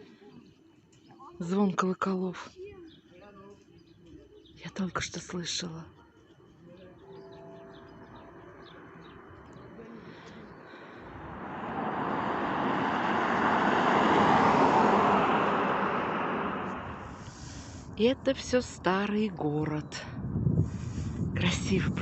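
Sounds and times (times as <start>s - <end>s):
faint bird chirps: 5.9s - 11.0s
car driving past: 7.0s - 18.0s.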